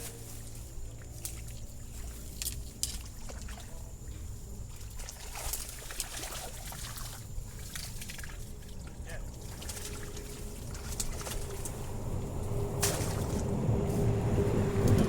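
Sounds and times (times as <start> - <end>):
water trickling and splashing: 0.4 - 15.0
steady low rumble: 7.0 - 15.0.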